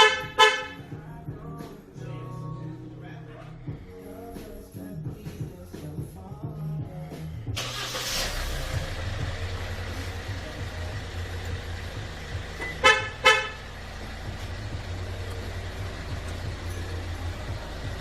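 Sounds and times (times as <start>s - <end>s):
car horn chirps: 0.0s - 1.0s, 12.6s - 13.8s
car engine idling: 0.0s - 18.0s.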